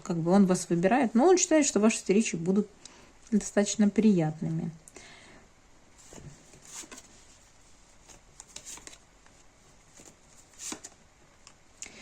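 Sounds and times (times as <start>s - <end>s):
cards rustling: 6.0s - 11.0s.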